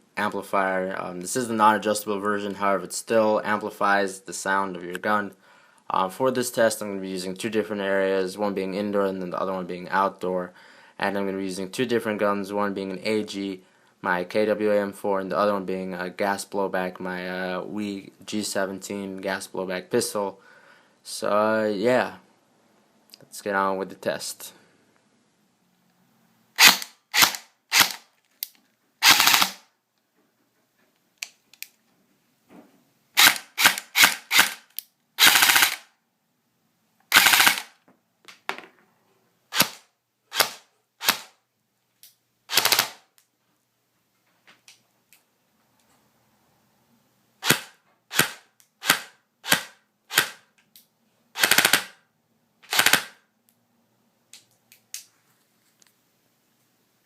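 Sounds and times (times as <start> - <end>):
airsoft rifle firing: 26.6 - 28.0, 29.0 - 29.7, 35.2 - 35.9, 37.1 - 37.7, 42.5 - 43.0, 47.4 - 50.4, 51.4 - 52.0, 52.7 - 53.2.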